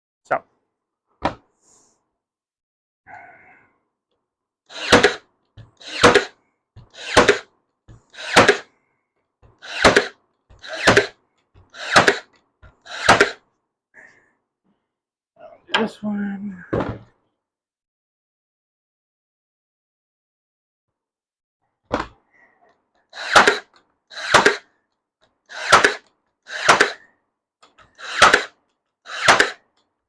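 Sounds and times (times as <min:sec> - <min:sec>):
nail gun firing: 0:04.7 - 0:08.7, 0:09.6 - 0:13.4, 0:23.2 - 0:24.7, 0:25.5 - 0:27.1, 0:27.8 - 0:29.7.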